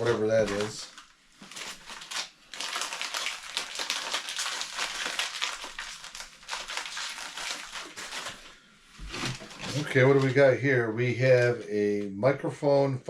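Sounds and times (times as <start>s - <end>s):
packaging crinkling: 0.0s - 10.4s.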